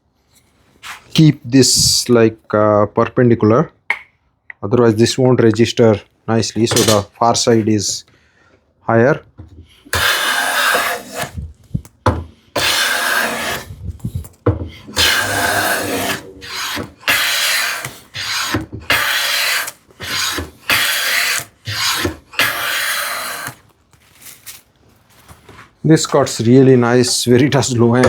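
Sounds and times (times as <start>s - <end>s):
hand plane shaving wood: 9.8s - 11.4s, 12.5s - 13.8s, 14.7s - 23.6s.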